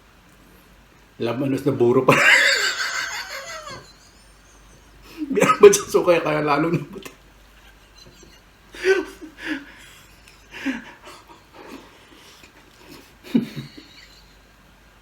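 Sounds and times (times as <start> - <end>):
man's breathy chuckles: 7.6 - 14.5.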